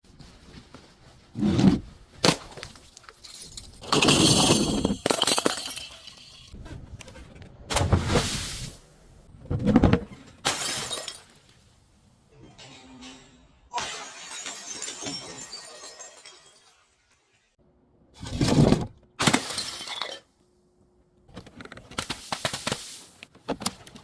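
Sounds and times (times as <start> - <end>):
glass bottles shattering: 3.1 - 6.6, 10.4 - 11.5, 12.4 - 17.6, 19.2 - 20.3.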